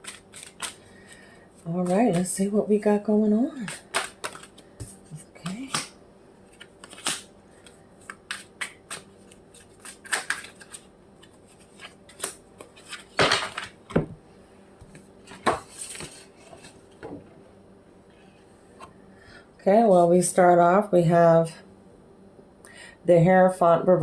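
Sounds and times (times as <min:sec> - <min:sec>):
cards shuffled on a table: 0:03.6 - 0:05.9, 0:06.5 - 0:14.0.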